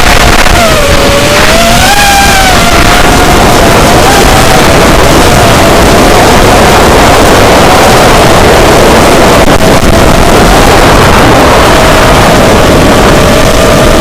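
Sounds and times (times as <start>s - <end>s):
model plane motor whining: 0.0s - 14.0s
wind buffeting: 0.0s - 14.0s.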